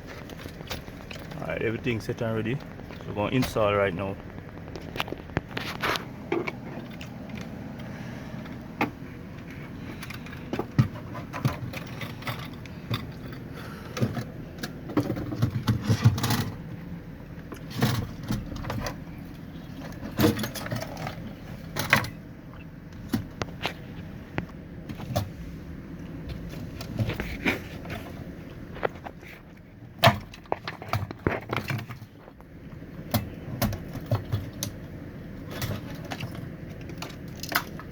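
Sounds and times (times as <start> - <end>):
steady low hum: 0.0 - 37.9
tools and metal parts clinking: 8.4 - 16.7, 19.8 - 22.2, 35.4 - 37.9.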